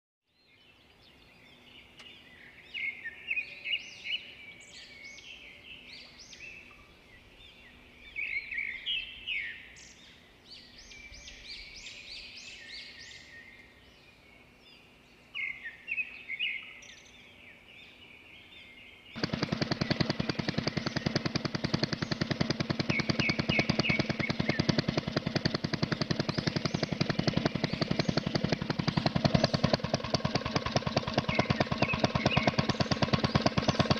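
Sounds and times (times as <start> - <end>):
birds chirping: 0.3 - 33.9
miniature engine rattling: 19.2 - 33.9.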